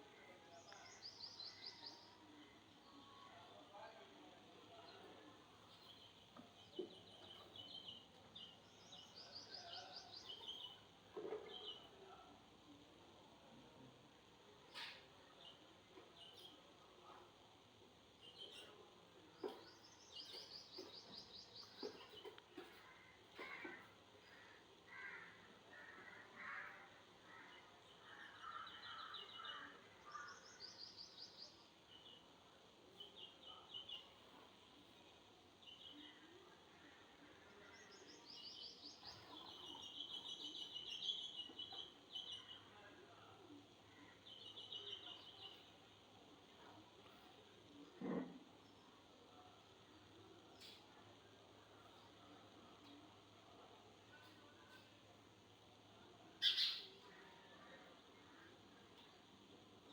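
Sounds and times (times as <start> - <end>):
sparrows chirping: 6.9 - 10.8, 19.4 - 22.8, 37.7 - 42.7, 56.4 - 57.0
bird trills: 56.4 - 56.9.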